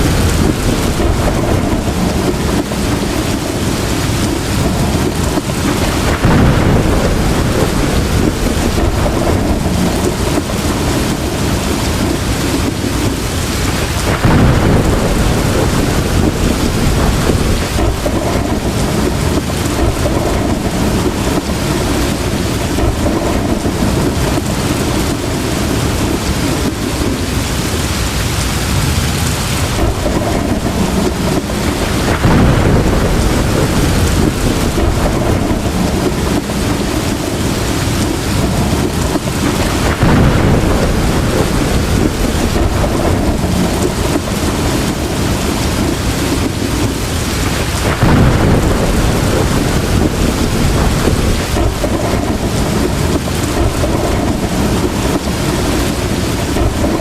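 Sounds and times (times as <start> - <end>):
heavy rain pouring: 0.0 - 57.0
thunder rumbling: 0.0 - 57.0.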